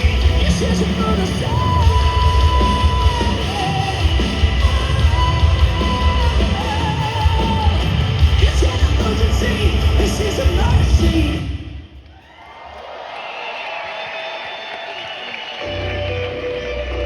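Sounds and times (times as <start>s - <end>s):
live rock band playing: 0.0s - 11.4s.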